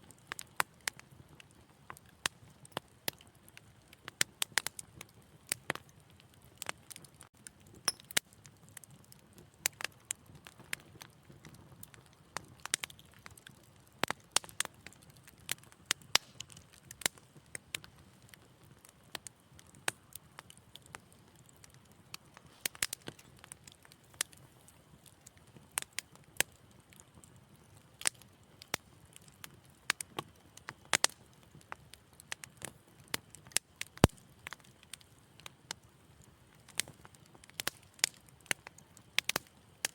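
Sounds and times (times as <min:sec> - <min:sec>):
wood fire crackling: 0:00.0 - 0:39.9.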